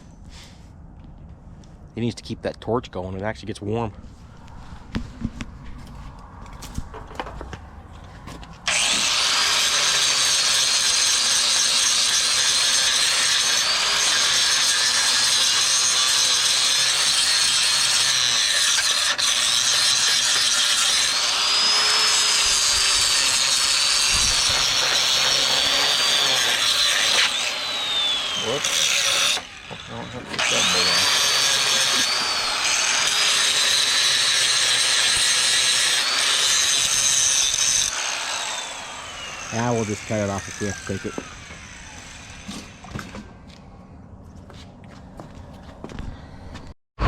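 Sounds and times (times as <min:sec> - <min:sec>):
power tool rasping whine: 0:08.6 - 0:43.4.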